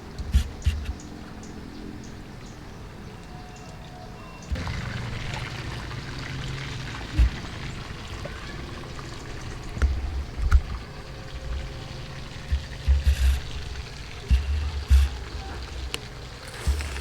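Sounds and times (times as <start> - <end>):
hot oil sizzling: 4.5 - 9.7
low thumps and clicks: 7.1 - 7.6, 12.4 - 17.0.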